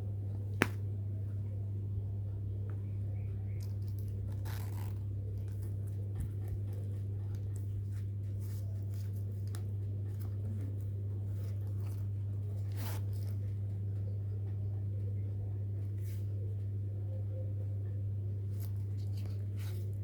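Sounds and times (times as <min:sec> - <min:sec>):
steady low hum: 0:00.0 - 0:20.0
wallet packaging rustling: 0:00.4 - 0:00.9, 0:03.6 - 0:13.6, 0:18.4 - 0:20.0.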